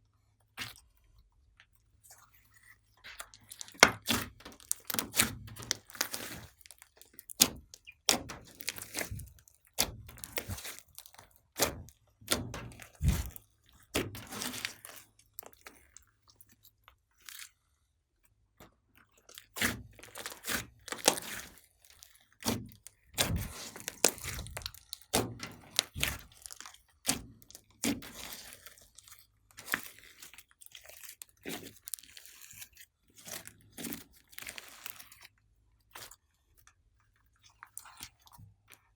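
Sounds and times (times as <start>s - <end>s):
slime sticky clicks and pops: 3.1s - 6.2s.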